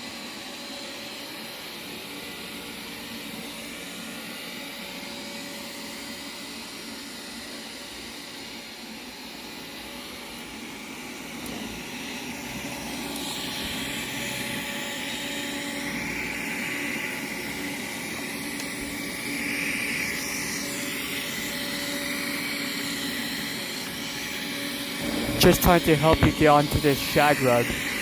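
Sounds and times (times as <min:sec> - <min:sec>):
robot vacuum motor whir: 0:09.4 - 0:28.0.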